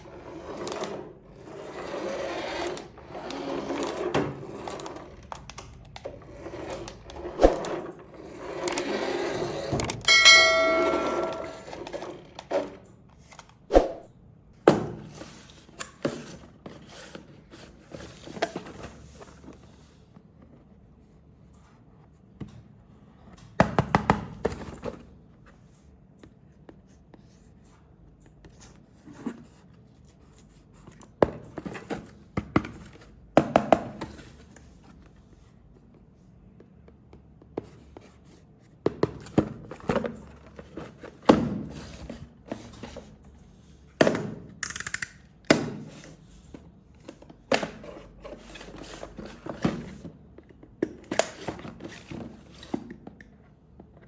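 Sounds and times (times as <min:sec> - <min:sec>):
plastic toy parts clicking: 0:44.6 - 0:45.3.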